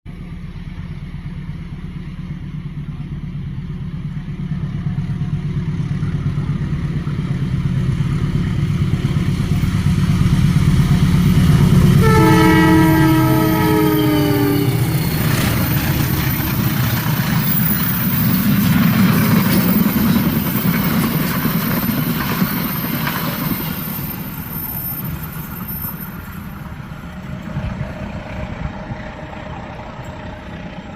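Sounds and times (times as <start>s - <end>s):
diesel locomotive engine rumble: 0.1s - 30.9s
train coaches rolling past: 0.1s - 30.9s
multi-tone train horn: 11.9s - 17.2s.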